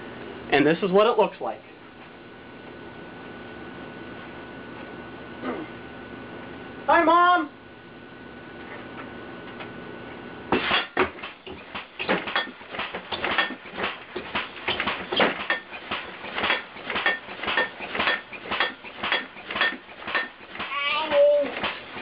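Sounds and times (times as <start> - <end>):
metallic clattering and banging: 10.6 - 20.8.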